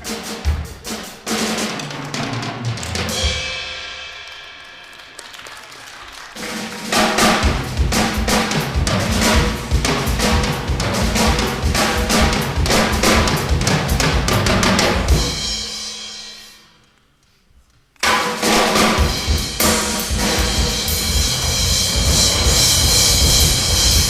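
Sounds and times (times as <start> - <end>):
fast drumming with bass-drum kicks: 0.0 - 3.7, 6.4 - 15.6, 18.5 - 24.0.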